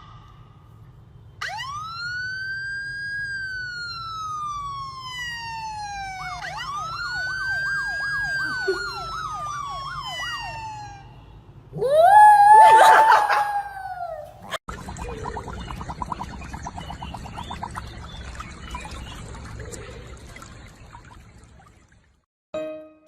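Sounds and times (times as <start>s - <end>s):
siren slow wail: 1.4s - 14.3s
siren fast yelp: 1.4s - 14.6s.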